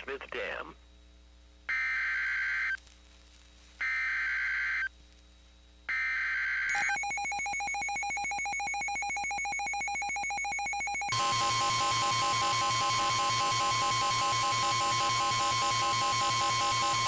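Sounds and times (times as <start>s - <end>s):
digital data tone bursts: 6.7s - 17.0s
steady attention tone: 6.7s - 17.0s.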